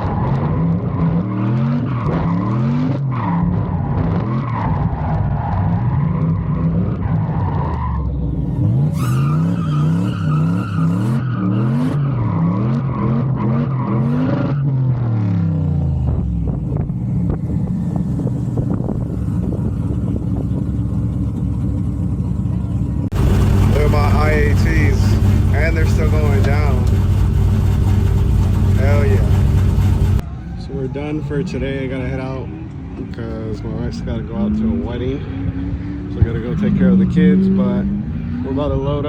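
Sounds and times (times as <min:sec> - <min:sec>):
tyres skidding and squealing: 0:00.0 - 0:39.0
truck engine revving: 0:08.3 - 0:30.2.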